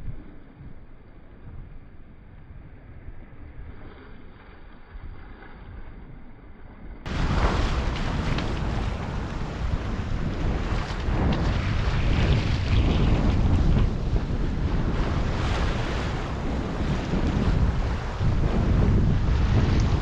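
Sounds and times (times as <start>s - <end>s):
water rushing along hull: 7.1s - 20.0s
wind buffeting microphone: 7.1s - 20.0s.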